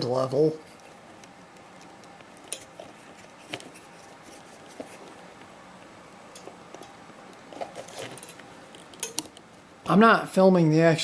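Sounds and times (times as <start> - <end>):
soft scraping of parts: 0.6 - 9.3.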